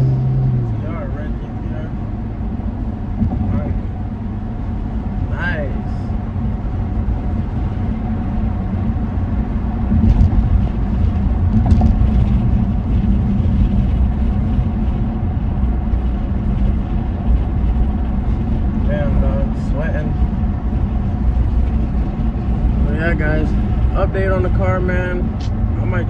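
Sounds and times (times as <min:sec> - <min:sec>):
car engine and road drone: 0:00.0 - 0:26.0.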